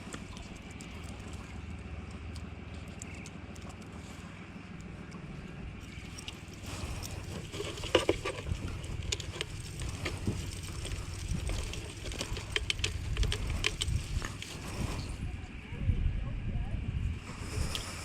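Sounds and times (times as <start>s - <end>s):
wind rumble on microphone: 5.4s - 18.0s.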